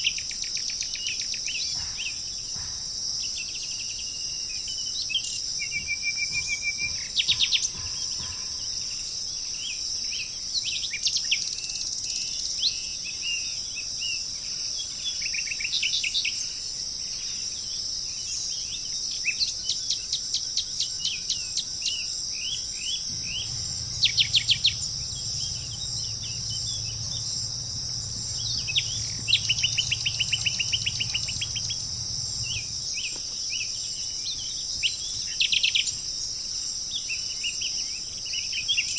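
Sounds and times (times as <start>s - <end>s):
high-pitched insect drone: 0.0s - 13.0s, 23.0s - 36.9s
songbirds chirping and trilling: 0.0s - 14.2s, 20.8s - 36.0s.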